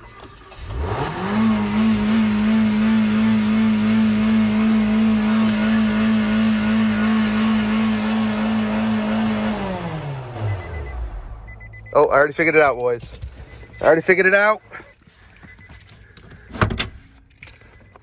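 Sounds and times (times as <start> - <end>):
car engine revving high: 0.6 - 11.6.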